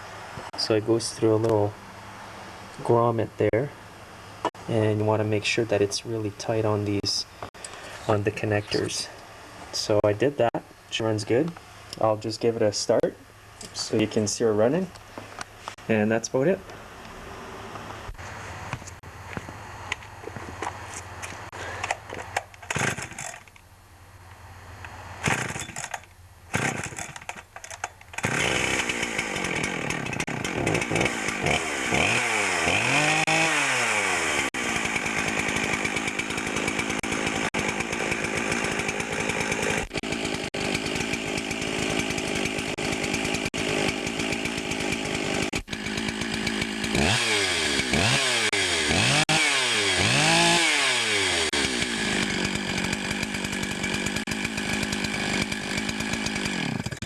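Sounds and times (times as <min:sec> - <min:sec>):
chainsaw engine running: 0:19.0 - 0:23.5, 0:24.5 - 0:57.0
chainsaw revving: 0:21.4 - 0:23.5, 0:24.7 - 0:27.4, 0:28.2 - 0:57.0
chainsaw pull-start bursts: 0:21.5 - 0:23.6, 0:25.2 - 0:57.0.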